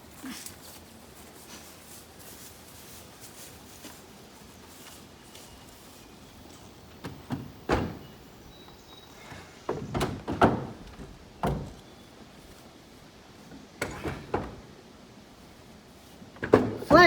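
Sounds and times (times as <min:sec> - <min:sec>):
heavy objects knocking and thudding: 0:09.3 - 0:11.8.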